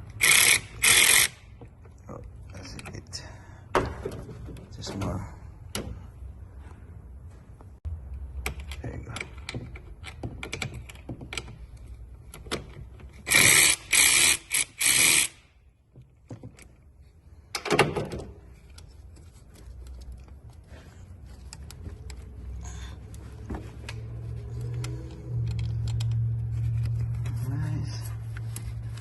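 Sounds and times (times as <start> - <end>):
tools clicking and tapping: 8.1 - 15.3.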